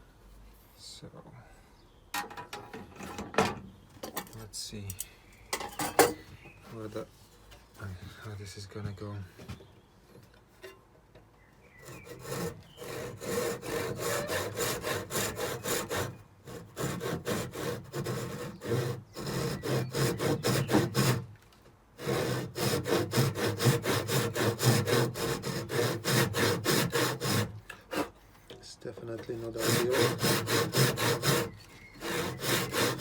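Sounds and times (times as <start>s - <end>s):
handsaw cutting wood: 11.8s - 21.3s, 22.0s - 28.2s, 29.3s - 33.0s.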